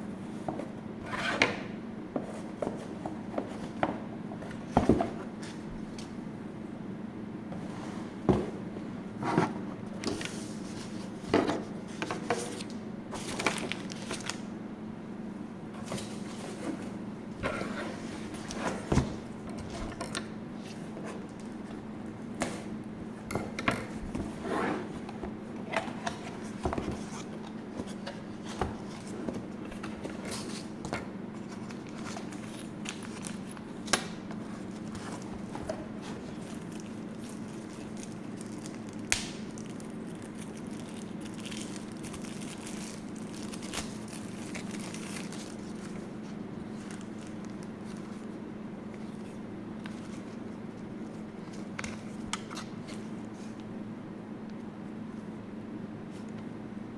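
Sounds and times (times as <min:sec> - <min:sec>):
steady low hum: 0:00.0 - 0:56.9
packaging clicks and crinkles: 0:12.6 - 0:14.5, 0:31.4 - 0:46.0.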